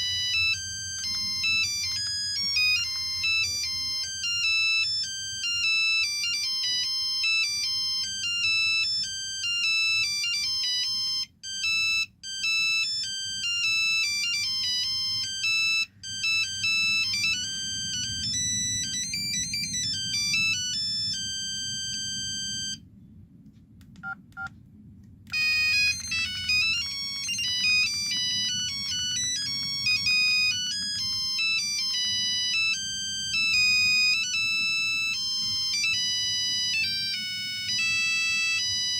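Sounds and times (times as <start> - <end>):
synthesized ringtone tunes: 0.0 - 22.8, 25.3 - 38.9
held tone: 25.3 - 38.9.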